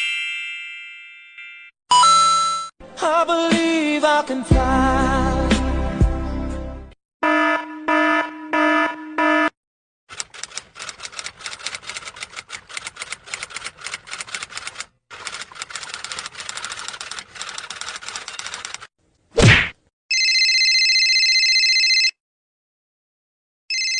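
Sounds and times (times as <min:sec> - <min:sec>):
rapid key clicks: 0:10.1 - 0:18.9.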